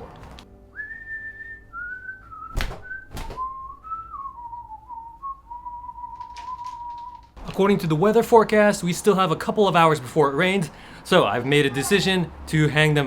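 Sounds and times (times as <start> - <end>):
person whistling a tune: 0.7 - 7.3.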